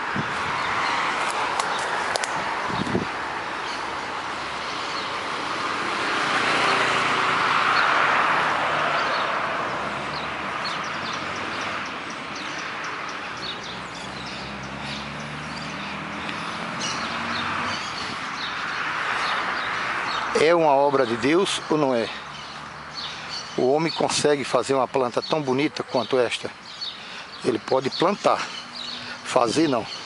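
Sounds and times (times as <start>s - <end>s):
small birds chirping: 0.0s - 5.6s, 7.6s - 30.0s
vehicle passing: 0.0s - 23.6s
town traffic: 0.0s - 30.0s.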